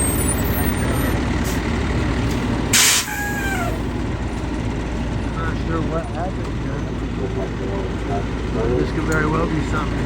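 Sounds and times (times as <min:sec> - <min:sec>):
fire engine rumbling: 0:00.0 - 0:10.0
air brakes hissing: 0:02.7 - 0:03.9.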